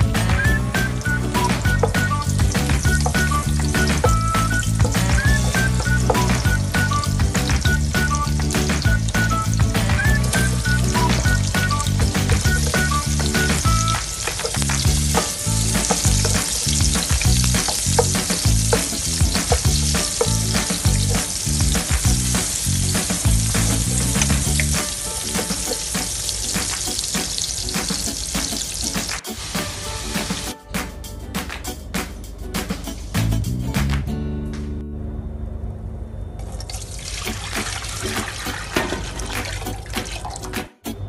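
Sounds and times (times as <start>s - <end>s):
background music: 0.0s - 35.4s, 37.2s - 41.0s
food sizzling in a pan: 0.9s - 30.5s.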